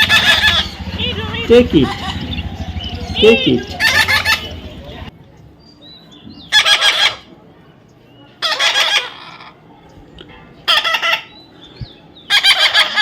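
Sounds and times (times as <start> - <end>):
parrot squawking: 0.0 - 4.6, 6.5 - 7.3, 8.4 - 9.6, 10.6 - 11.4, 12.3 - 13.0.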